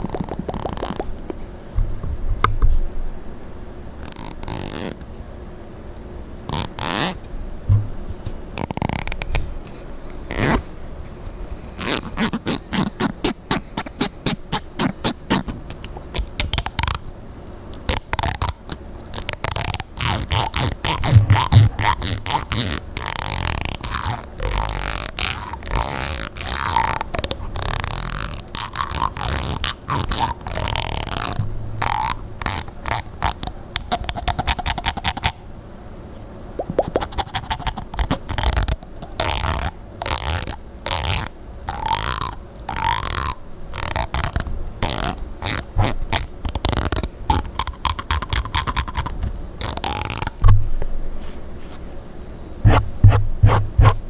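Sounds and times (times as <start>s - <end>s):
comb teeth strummed and scraped: 6.5s - 9.5s, 17.7s - 35.4s, 36.9s - 50.7s, 52.6s - 54.0s.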